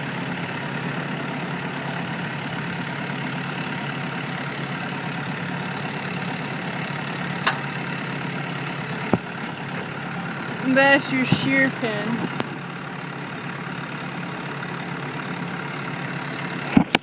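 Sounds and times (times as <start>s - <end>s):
tractor engine idling: 0.0s - 17.0s
sharp click: 7.4s - 7.7s.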